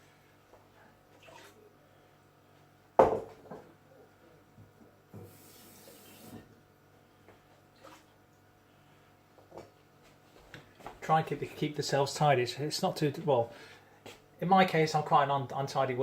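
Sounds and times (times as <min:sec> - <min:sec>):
water swished in a jar: 0:01.1 - 0:01.7.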